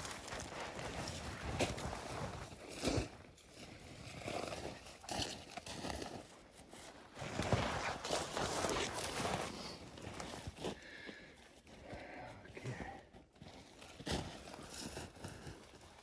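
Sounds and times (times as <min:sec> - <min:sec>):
footsteps crunching in snow: 0:00.0 - 0:03.1, 0:05.2 - 0:10.8.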